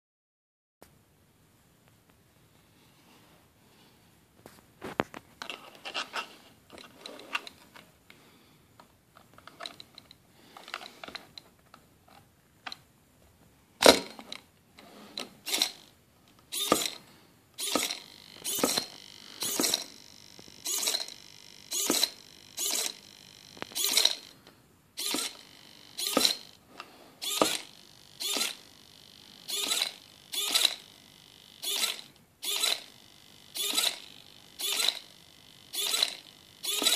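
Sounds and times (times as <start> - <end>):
servo whirring buzz: 14.9 - 15.9, 16.5 - 17.0, 17.6 - 24.4, 25.0 - 26.6, 27.2 - 36.9
sharp click: 16.6 - 17.0, 17.6 - 23.0, 29.5 - 30.8, 31.6 - 32.9, 33.6 - 35.1, 35.7 - 36.9.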